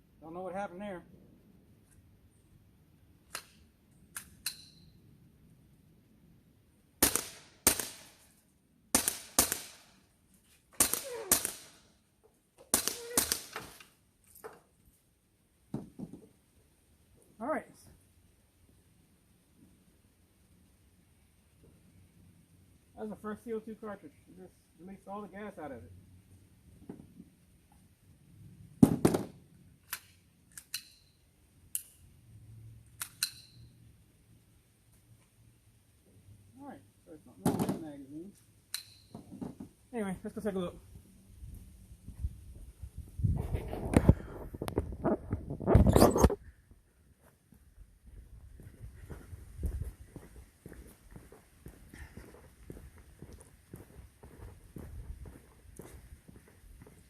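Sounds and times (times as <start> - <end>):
air pistol shots cracking: 7.0 - 8.2, 8.9 - 10.0, 10.8 - 11.8, 12.7 - 13.8
metallic clicks: 29.8 - 32.0, 33.0 - 33.6.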